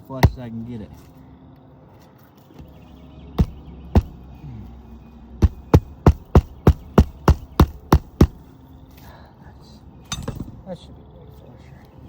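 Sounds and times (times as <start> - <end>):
hammer driving nail into shingle: 0.0 - 0.6, 3.4 - 4.2, 5.4 - 8.4.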